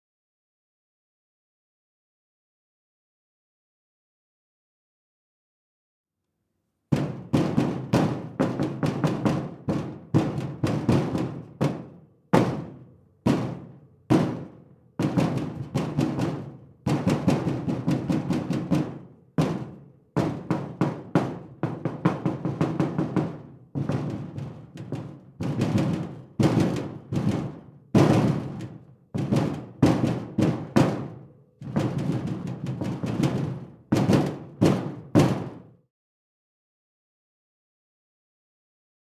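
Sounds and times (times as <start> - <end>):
sheet metal being banged: 7.0 - 35.6.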